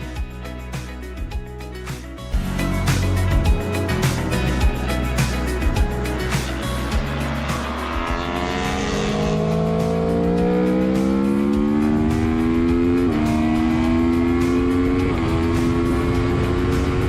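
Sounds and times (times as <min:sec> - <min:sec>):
motorcycle engine accelerating: 0:02.4 - 0:17.0.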